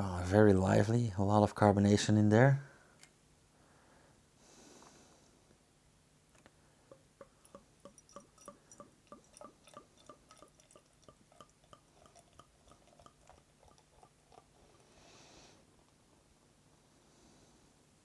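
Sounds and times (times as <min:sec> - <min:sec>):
beer glugging from a bottle: 0:06.9 - 0:14.8.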